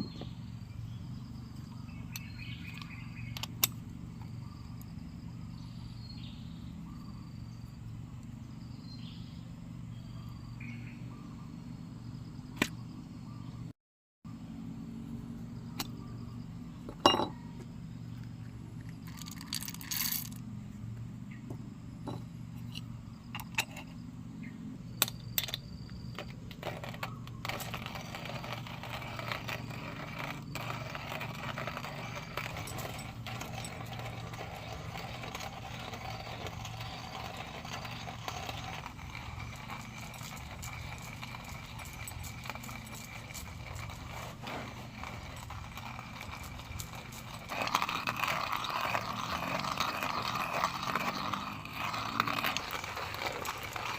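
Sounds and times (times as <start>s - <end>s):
sharp clicks and clinks: 18.8s - 20.4s, 25.0s - 53.9s.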